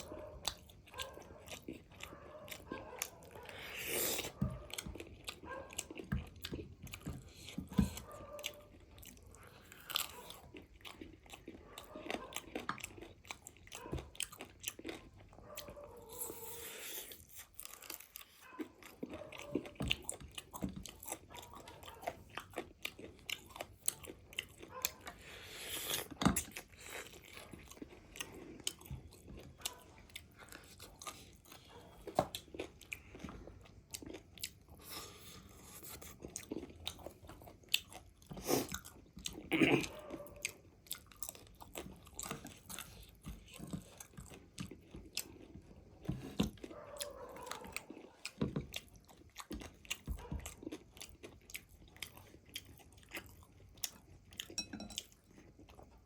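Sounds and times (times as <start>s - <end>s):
crunching and chewing fried chicken: 0.0s - 56.0s.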